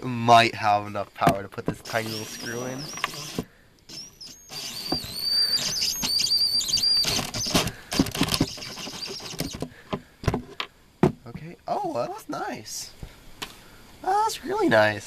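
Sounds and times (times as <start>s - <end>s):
sharp clicks and knocks: 1.2s - 11.4s
power drill motor whining: 1.8s - 9.7s.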